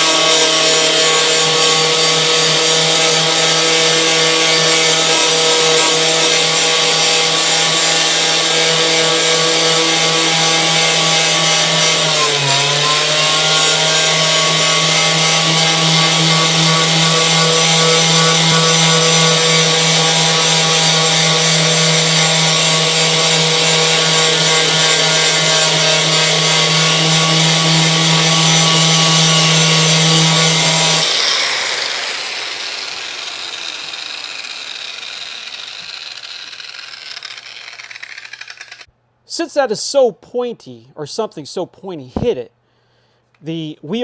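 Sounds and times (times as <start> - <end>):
angle grinder grinding metal: 0.0 - 38.9.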